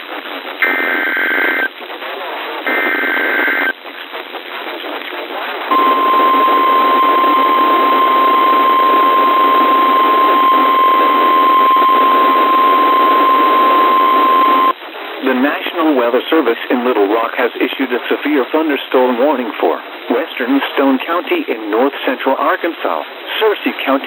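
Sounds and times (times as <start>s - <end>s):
buzzing data bursts: 0.6s - 1.7s, 2.7s - 3.7s, 5.7s - 14.7s
radio static: 2.6s - 3.7s, 5.7s - 14.7s
steady warning alarm tone: 2.7s - 3.7s, 5.7s - 14.7s.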